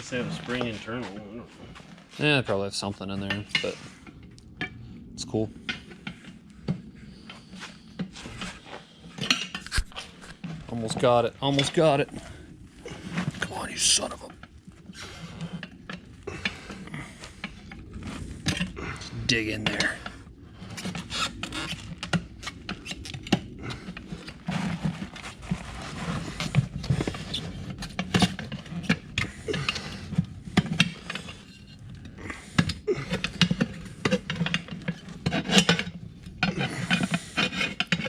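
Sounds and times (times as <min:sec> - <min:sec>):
tools scraping on wheel rim: 0:14.8 - 0:38.0.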